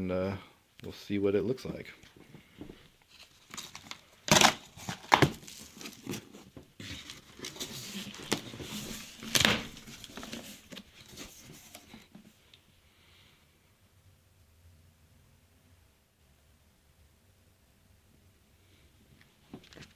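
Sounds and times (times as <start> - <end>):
cardboard rustling: 2.2 - 12.4
packing tape tearing: 3.3 - 10.7.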